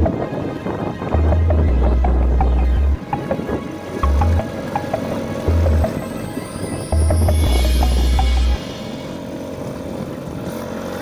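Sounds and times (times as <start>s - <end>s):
deep bass notes: 0.0s - 0.3s, 1.1s - 3.3s, 4.0s - 6.2s, 6.8s - 8.8s
short plucked notes: 1.2s - 9.3s.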